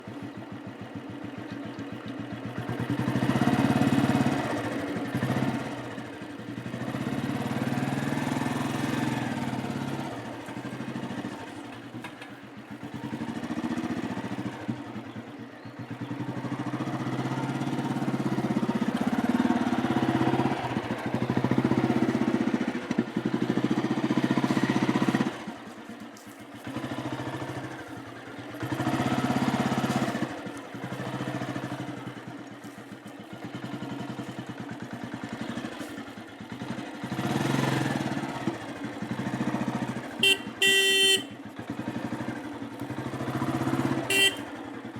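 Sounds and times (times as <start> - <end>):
motorcycle engine revving: 0.0 - 44.9.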